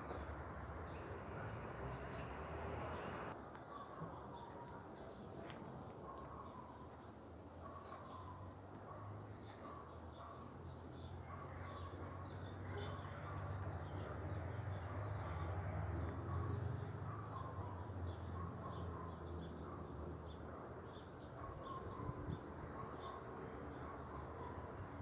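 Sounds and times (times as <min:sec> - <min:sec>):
birds chirping: 0:00.0 - 0:03.3.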